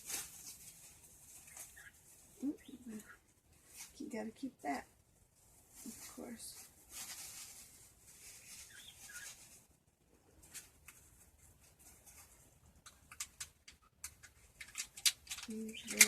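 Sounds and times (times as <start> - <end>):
packing material rustling: 14.4 - 16.0.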